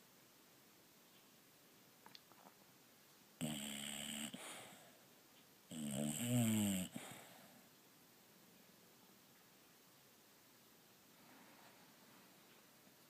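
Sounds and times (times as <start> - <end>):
bulldog snoring: 3.4 - 4.8, 5.7 - 7.3.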